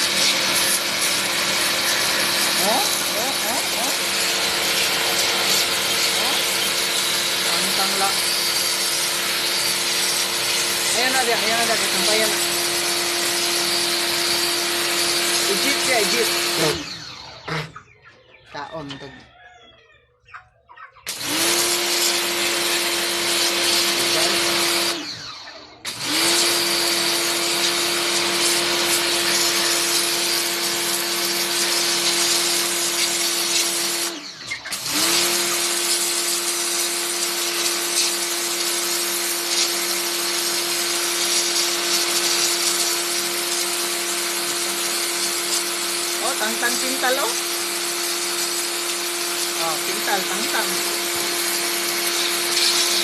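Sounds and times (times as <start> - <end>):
water jet hissing: 0.0 - 13.8, 46.2 - 53.0
pressure washer motor whine: 0.0 - 17.7, 21.1 - 53.0.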